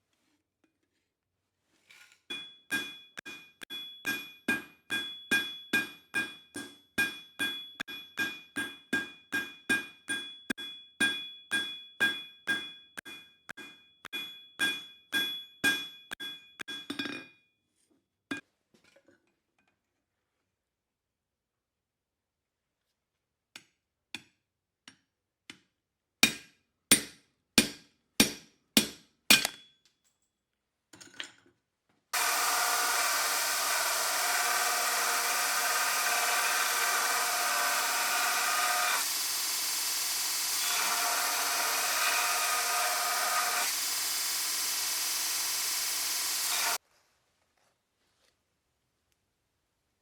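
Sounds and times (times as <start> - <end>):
hammer striking steel on anvil: 2.3 - 17.1, 26.2 - 29.6
power tool running: 32.2 - 46.8.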